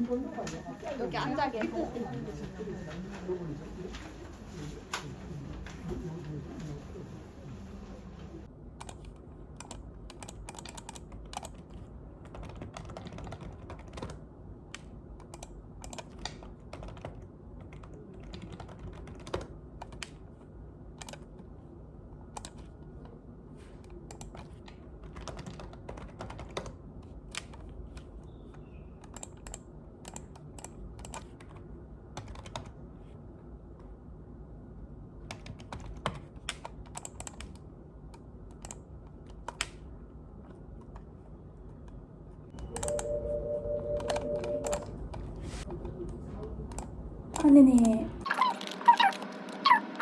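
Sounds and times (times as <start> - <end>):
keyboard keystrokes clicking: 8.8 - 20.2
low steady hum: 42.5 - 50.0.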